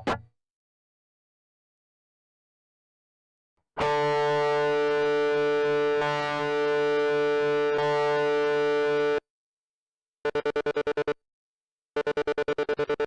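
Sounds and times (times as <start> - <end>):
guitar tremolo chopping: 0.0 - 0.3
overdriven electric guitar chord: 3.8 - 9.2.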